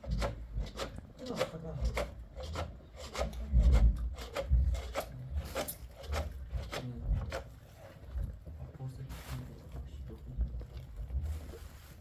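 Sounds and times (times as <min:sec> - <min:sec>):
scraping strokes on hard surface: 0:11.2 - 0:12.0.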